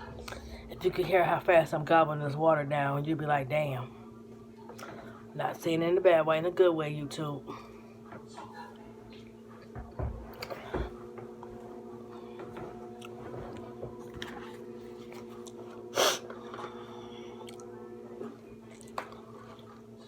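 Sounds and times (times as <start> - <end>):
steady background hum: 0.0 - 20.0
person chewing food: 13.0 - 16.4, 17.4 - 17.8, 18.7 - 19.8.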